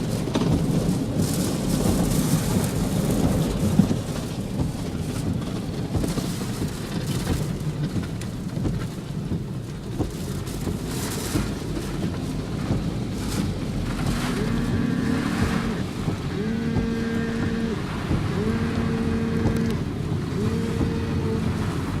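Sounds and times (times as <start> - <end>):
rain spatters: 0.0 - 22.0
wind buffeting a car: 0.0 - 22.0.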